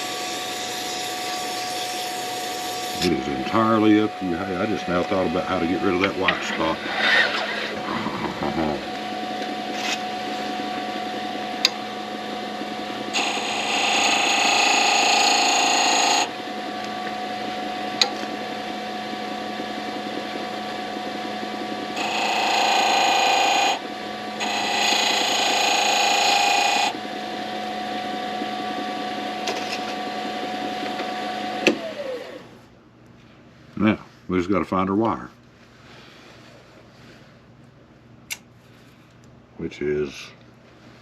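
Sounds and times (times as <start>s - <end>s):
wood lathe humming: 0.0s - 32.5s.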